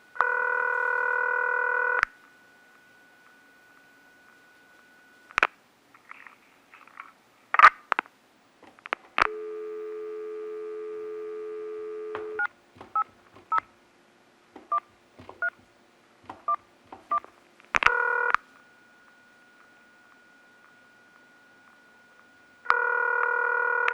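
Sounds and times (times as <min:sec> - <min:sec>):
dial tone: 0:00.2 - 0:02.1, 0:09.3 - 0:12.5, 0:17.9 - 0:18.8, 0:22.6 - 0:23.9
touch-tone beeps: 0:09.3 - 0:13.6.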